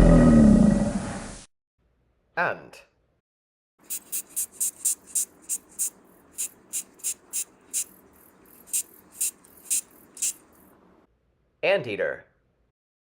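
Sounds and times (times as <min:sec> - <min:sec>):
ant high-pitched chirps: 0:03.8 - 0:10.6
faint hiss: 0:03.9 - 0:10.7.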